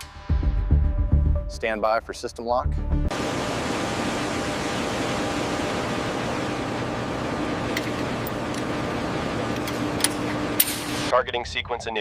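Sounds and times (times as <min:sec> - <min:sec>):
rushing machinery noise: 0:03.1 - 0:11.1.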